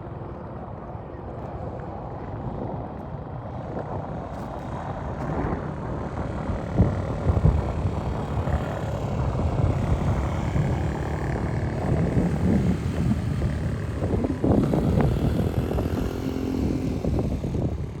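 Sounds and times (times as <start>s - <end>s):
small motorbike engine running: 4.2s - 18.0s.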